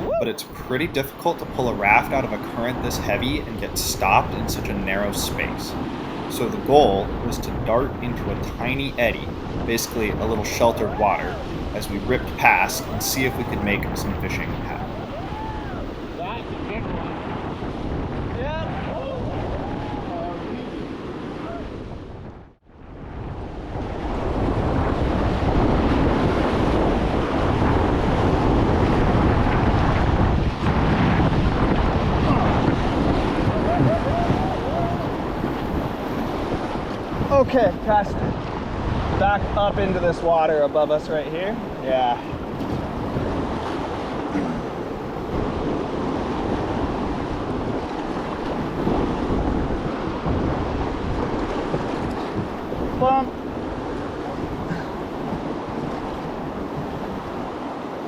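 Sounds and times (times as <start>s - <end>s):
whitewater rapids roaring: 0.0s - 0.8s, 8.3s - 17.1s, 31.6s - 38.3s, 51.2s - 58.0s
wind buffeting microphone: 0.0s - 58.0s.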